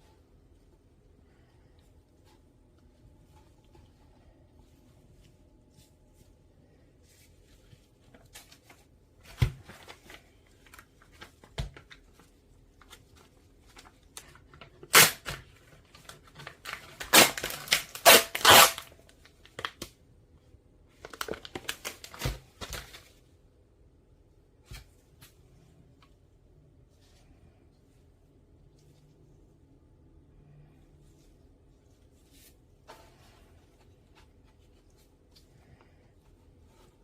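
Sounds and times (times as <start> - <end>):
food packaging crinkling: 12.8 - 19.9, 20.9 - 23.2
packaging tearing: 14.8 - 15.4, 16.3 - 19.8.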